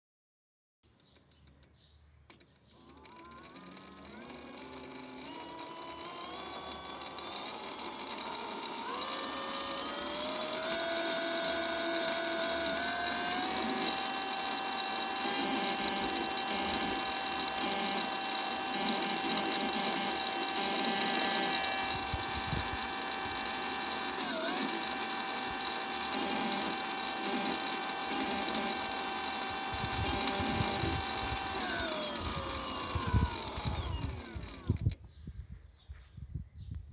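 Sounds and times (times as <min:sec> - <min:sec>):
electric bike motor whining: 0:02.7 - 0:35.0.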